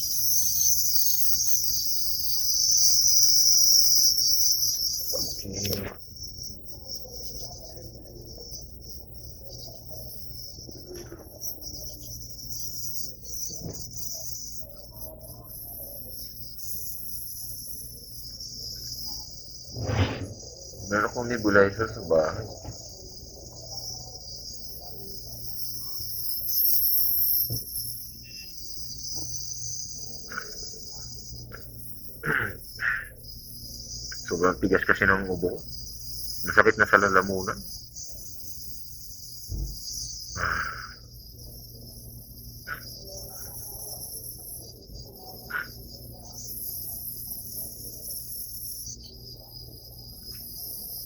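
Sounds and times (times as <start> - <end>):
crickets chirring: 0.0 - 51.0
insect trilling: 0.0 - 51.0
man coughing: 32.2 - 33.0.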